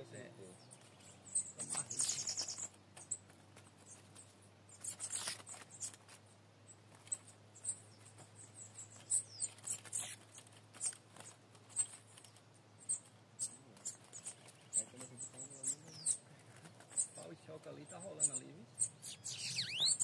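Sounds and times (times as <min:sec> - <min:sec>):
birds scuffling: 0:00.0 - 0:20.0
small songbirds squeaking and chirping: 0:00.0 - 0:20.0
falling bird call: 0:19.0 - 0:20.0.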